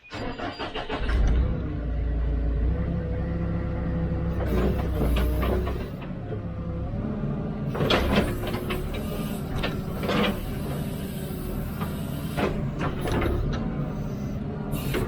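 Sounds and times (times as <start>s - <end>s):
diesel machinery rumbling: 0.0s - 15.0s.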